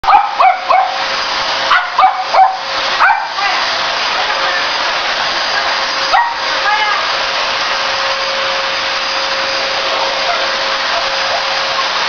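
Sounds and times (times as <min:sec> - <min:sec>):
dogs barking sharply: 0:00.0 - 0:01.0, 0:01.7 - 0:03.4, 0:06.1 - 0:06.4
vacuum cleaner motor humming: 0:00.1 - 0:12.0.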